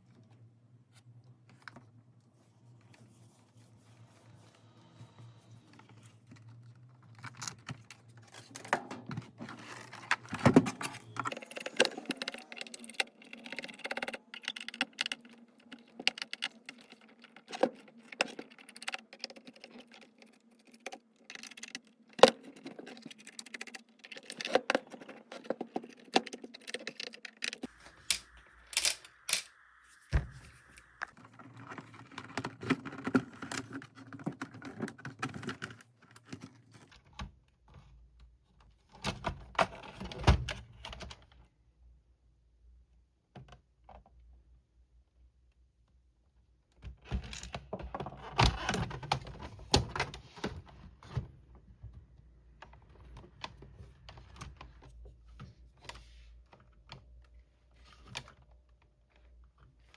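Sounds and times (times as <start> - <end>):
small tools clicking and rattling: 11.3 - 29.6.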